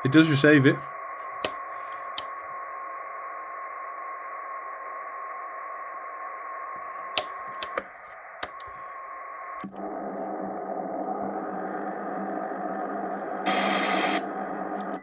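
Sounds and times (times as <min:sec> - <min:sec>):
radio receiver hiss: 0:00.0 - 0:15.0
sharp clicks: 0:01.3 - 0:02.4, 0:06.5 - 0:08.8
radio carrier whistle: 0:13.4 - 0:15.0.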